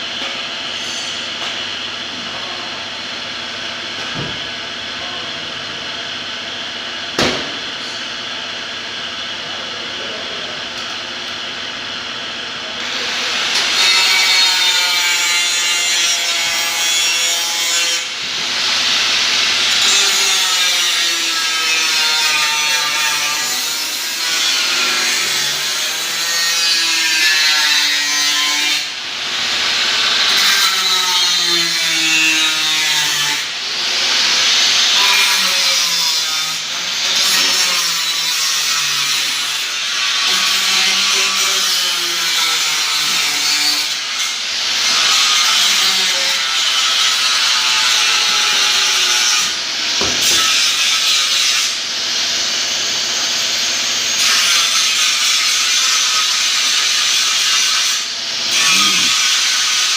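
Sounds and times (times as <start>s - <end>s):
power tool grinding sheet metal: 12.7s - 59.9s.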